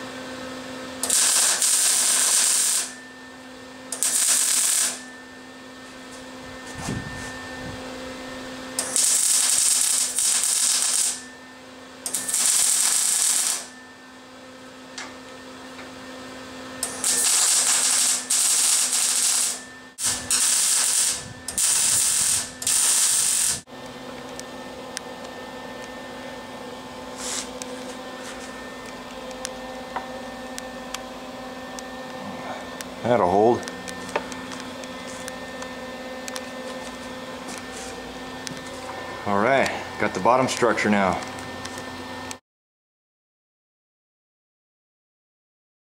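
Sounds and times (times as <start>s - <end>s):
steady hum: 0.1s - 42.3s
electric welder crackling hiss: 1.0s - 3.0s, 3.9s - 5.1s, 8.8s - 11.3s, 12.0s - 13.7s, 16.8s - 23.7s, 27.1s - 28.5s, 36.3s - 38.0s.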